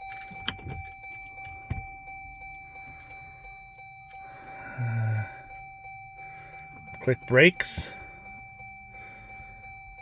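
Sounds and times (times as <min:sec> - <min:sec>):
low electronic tone: 0:00.0 - 0:10.0.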